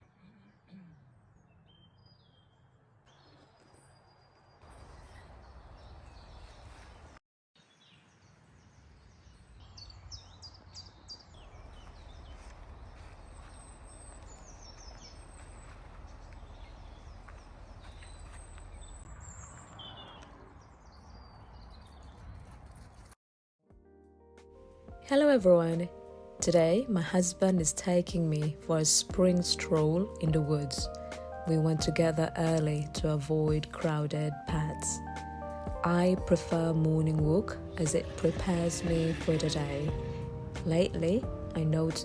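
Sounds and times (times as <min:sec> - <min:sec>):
birds singing and chirping: 0:07.7 - 0:22.3, 0:35.8 - 0:42.0
low outdoor rumble: 0:11.4 - 0:19.7.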